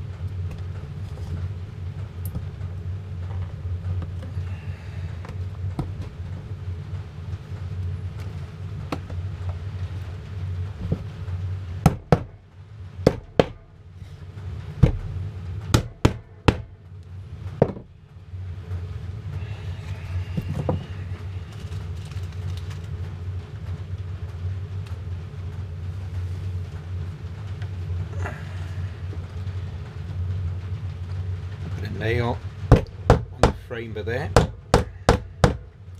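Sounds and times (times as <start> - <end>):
steady low hum: 0.0 - 35.9
hammer tapping nails into wood: 13.1 - 13.6, 34.4 - 35.6.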